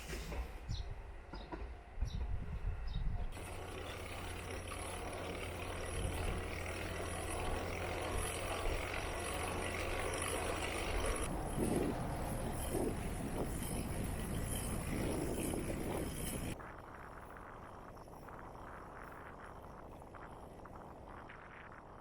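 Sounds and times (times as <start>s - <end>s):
vehicle running hum: 3.0s - 16.6s.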